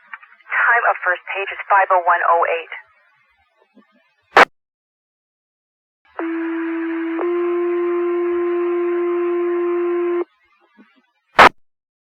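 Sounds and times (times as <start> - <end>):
radio hiss: 0.0 - 2.8.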